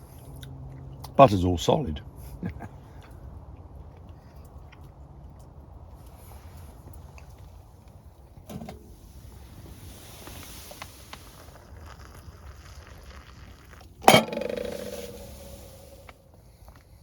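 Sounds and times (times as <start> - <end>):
metal cookware clinking and clanking: 14.0 - 16.0.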